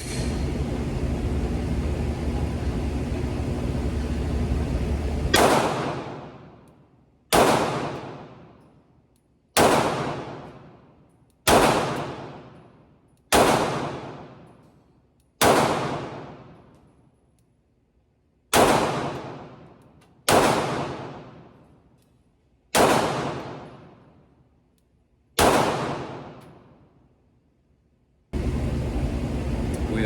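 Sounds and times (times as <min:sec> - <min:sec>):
rumbling hum: 0:00.0 - 0:05.8, 0:28.4 - 0:30.0
pistol shots echoing: 0:05.3 - 0:06.6, 0:07.3 - 0:08.6, 0:09.6 - 0:10.8, 0:11.4 - 0:12.7, 0:13.3 - 0:14.6, 0:15.4 - 0:16.7, 0:18.5 - 0:21.6, 0:22.7 - 0:24.1, 0:25.4 - 0:26.8.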